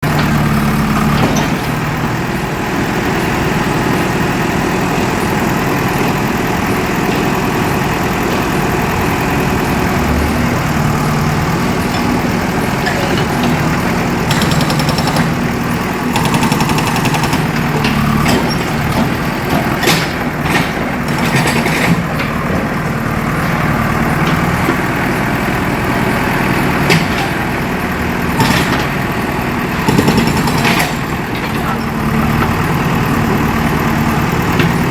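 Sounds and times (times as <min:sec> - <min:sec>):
diesel engine running: 0:00.0 - 0:34.9
hydraulic breaker hammering: 0:12.7 - 0:22.1, 0:28.3 - 0:31.8.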